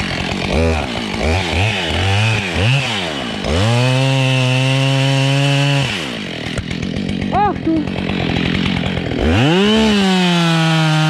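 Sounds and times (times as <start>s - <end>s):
chainsaw revving: 0.0s - 11.0s.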